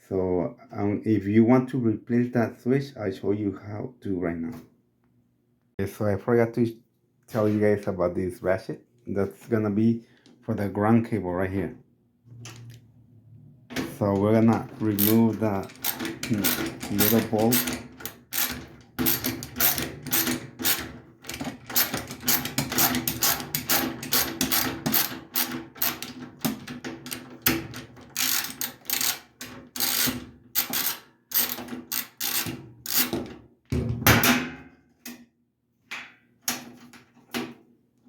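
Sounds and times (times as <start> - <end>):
socket ratchet clicking: 14.9 - 26.2, 28.2 - 29.2, 29.8 - 33.1.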